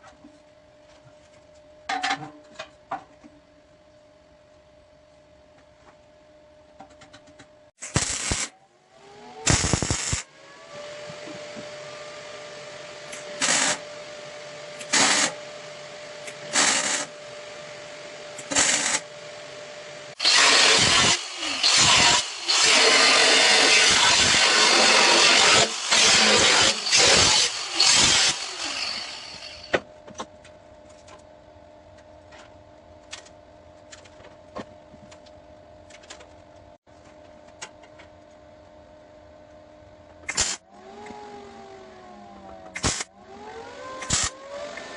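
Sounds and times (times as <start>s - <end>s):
welding arc hissing: 7.8s - 8.5s, 9.5s - 10.3s, 13.4s - 13.8s, 14.8s - 15.4s, 16.5s - 17.1s, 18.4s - 19.1s, 20.2s - 29.7s.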